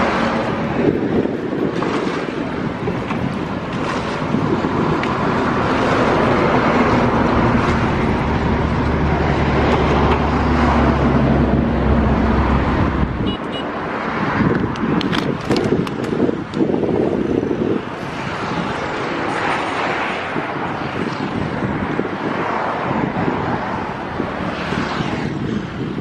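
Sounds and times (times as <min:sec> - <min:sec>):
rushing noise: 0:00.0 - 0:26.0.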